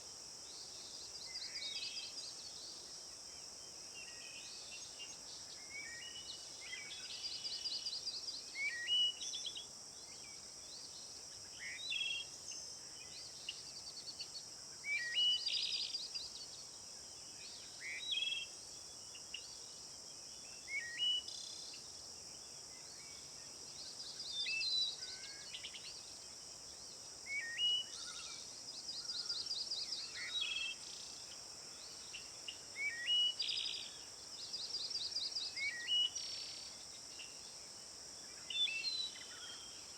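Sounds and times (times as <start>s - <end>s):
high insect drone: 0.1s - 39.9s
songbirds calling with trills: 27.3s - 37.5s.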